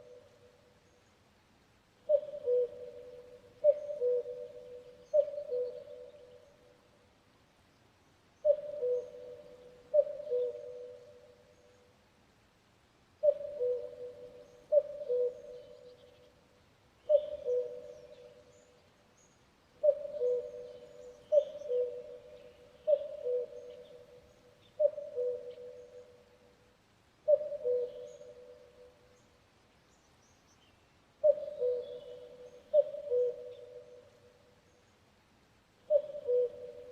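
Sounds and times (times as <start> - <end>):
cuckoo calling: 2.1 - 6.5, 8.4 - 11.3, 13.2 - 16.2, 17.1 - 18.7, 19.8 - 26.2, 27.3 - 29.0, 31.2 - 34.3, 35.9 - 36.9.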